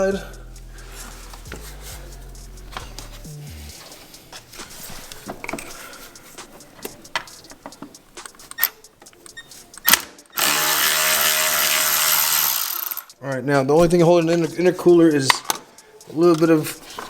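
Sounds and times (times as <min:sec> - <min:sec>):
power drill spinning: 0:10.4 - 0:13.1.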